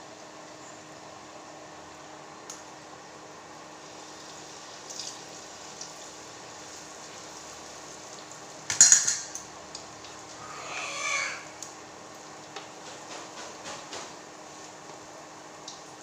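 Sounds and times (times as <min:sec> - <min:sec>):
faint hiss from frying pan: 0:00.0 - 0:12.8.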